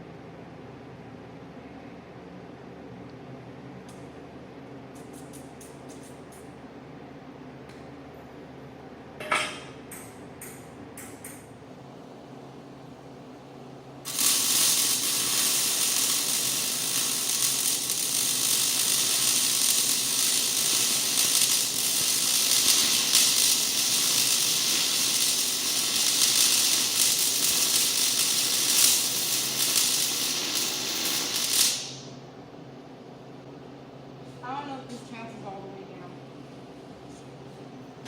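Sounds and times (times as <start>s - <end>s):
welding arc crackling: 14.0s - 32.2s.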